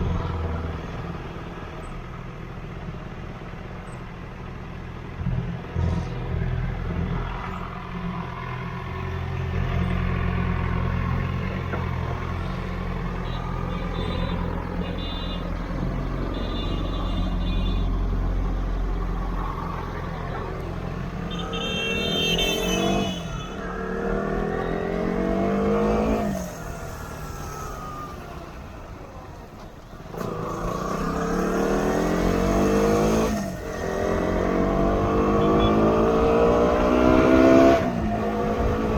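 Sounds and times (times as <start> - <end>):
motorcycle engine accelerating: 22.8 - 28.6, 30.0 - 38.9.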